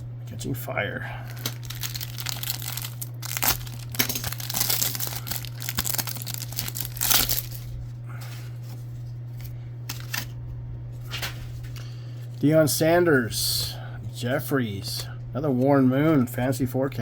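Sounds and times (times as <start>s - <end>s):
steady low hum: 0.0s - 17.0s
wrapper crinkling and tearing: 1.2s - 7.8s.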